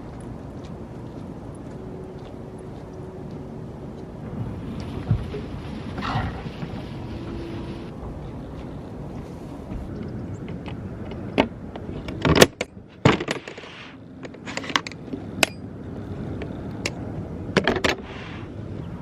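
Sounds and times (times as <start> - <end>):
steady low rumble: 0.0 - 12.2.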